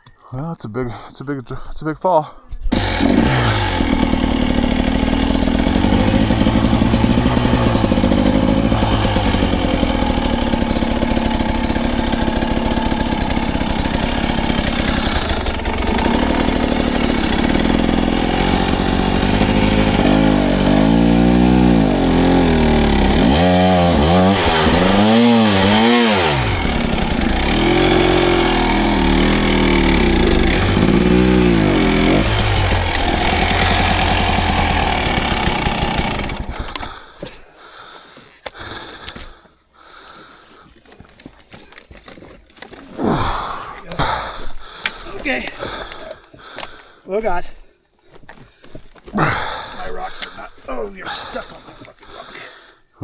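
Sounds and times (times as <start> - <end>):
dirt bike engine revving: 2.7 - 37.0.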